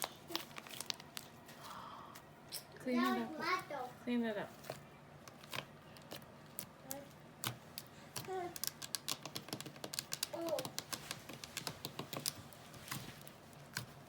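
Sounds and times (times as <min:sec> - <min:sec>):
nails clicking and tapping on slime: 0:05.3 - 0:13.0, 0:13.7 - 0:14.0.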